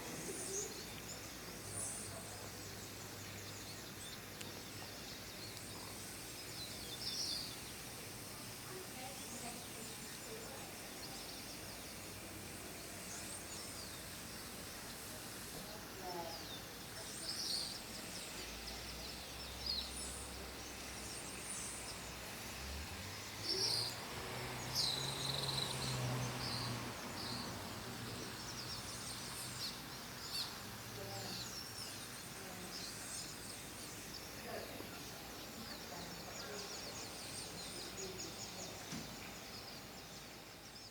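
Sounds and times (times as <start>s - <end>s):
background hiss: 0.0s - 40.9s
birds chirping: 12.6s - 40.9s.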